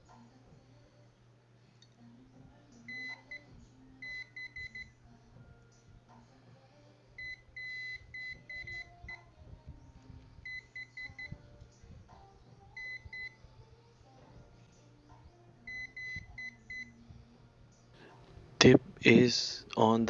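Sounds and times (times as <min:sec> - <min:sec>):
multimeter beeping: 0:02.9 - 0:03.4, 0:04.0 - 0:04.9, 0:07.2 - 0:09.2, 0:10.4 - 0:11.4, 0:12.8 - 0:13.4, 0:15.7 - 0:16.9.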